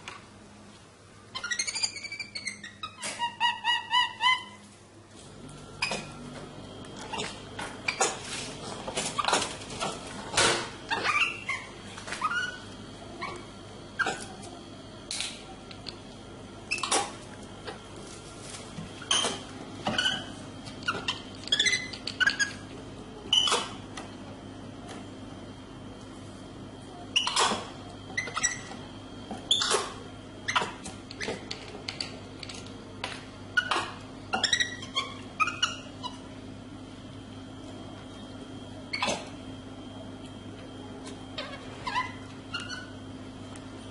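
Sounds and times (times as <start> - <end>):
squeaky animal calls: 1.3 - 4.6, 41.4 - 43.0
monkey squeaking and chirping: 1.4 - 4.6, 10.9 - 12.6, 20.9 - 22.6, 28.2 - 28.7, 34.4 - 36.2, 41.4 - 42.9.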